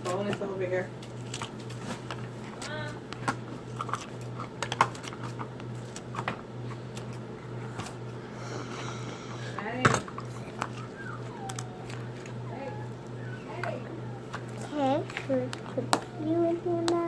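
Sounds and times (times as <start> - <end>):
steady low hum: 0.0 - 17.0
faint voices: 8.6 - 17.0.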